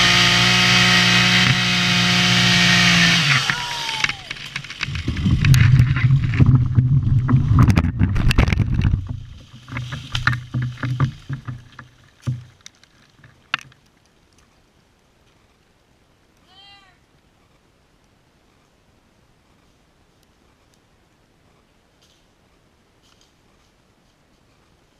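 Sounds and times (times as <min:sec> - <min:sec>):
low rumble of falling tree: 0:00.1 - 0:14.3
wood cracking and snapping: 0:00.2 - 0:14.5.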